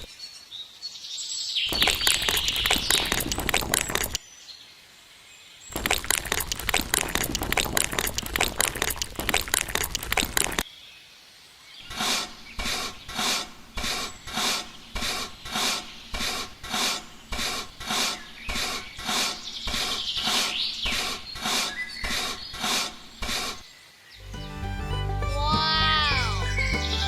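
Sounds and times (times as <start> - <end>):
rhythmic rasping: 24.2 - 27.0.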